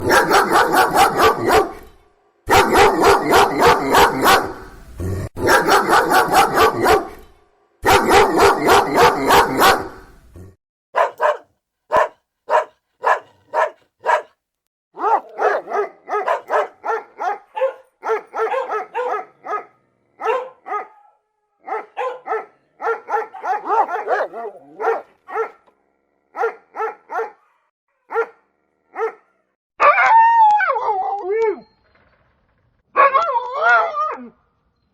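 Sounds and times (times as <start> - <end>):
dog giving single barks: 0.0 - 1.8, 2.5 - 4.6, 5.4 - 7.2, 7.8 - 10.0, 11.0 - 14.4, 15.0 - 25.7, 26.4 - 28.4
dog barking rapidly: 0.0 - 1.9, 2.5 - 4.7, 5.3 - 7.2, 7.8 - 10.1, 11.0 - 14.4, 15.0 - 25.7, 26.3 - 30.0
pack of dogs barking: 0.0 - 1.9, 2.5 - 10.2, 11.0 - 14.3, 15.0 - 31.2, 33.0 - 34.3.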